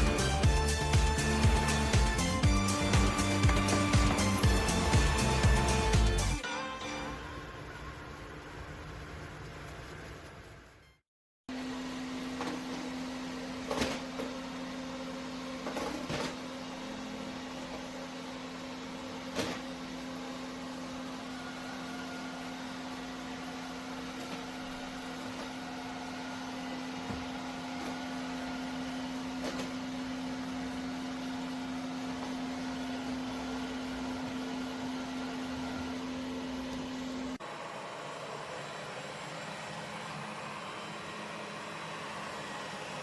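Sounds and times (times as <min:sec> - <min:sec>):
robot vacuum motor whirring: 0:00.0 - 0:06.4.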